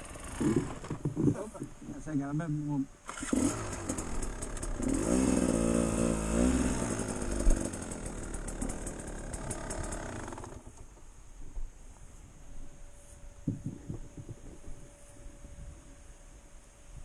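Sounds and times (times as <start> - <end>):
dirt bike engine revving: 0.0 - 1.3, 3.0 - 10.8.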